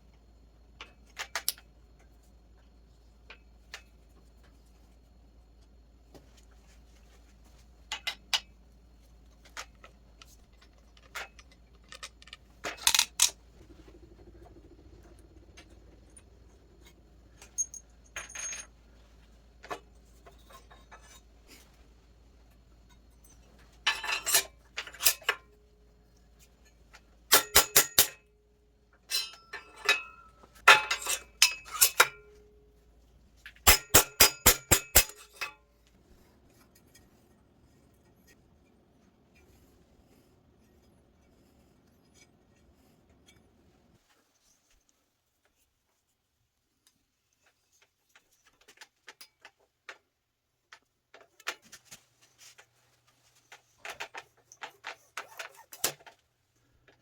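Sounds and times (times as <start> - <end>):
small metal tools clinking: 9.4 - 13.4, 15.6 - 18.8, 22.8 - 25.5, 29.0 - 32.5, 33.5 - 35.7.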